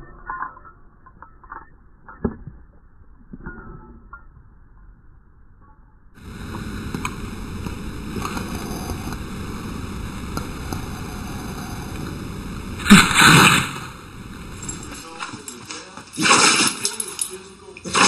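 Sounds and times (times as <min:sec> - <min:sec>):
steady wind-like noise: 0:06.2 - 0:16.2.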